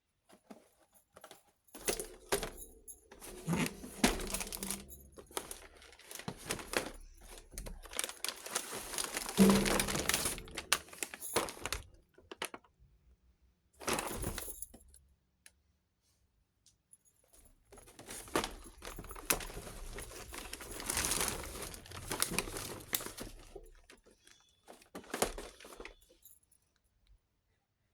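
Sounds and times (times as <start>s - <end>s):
packaging crinkling: 3.2s - 12.5s, 18.0s - 26.0s.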